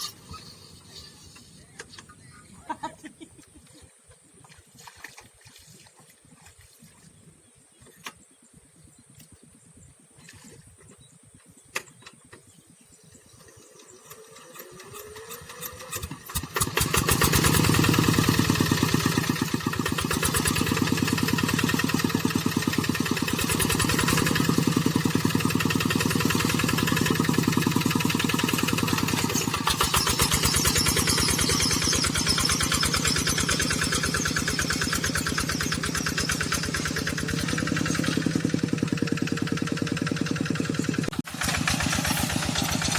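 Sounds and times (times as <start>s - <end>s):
tractor diesel engine starting: 0.0s - 2.3s, 13.3s - 42.9s.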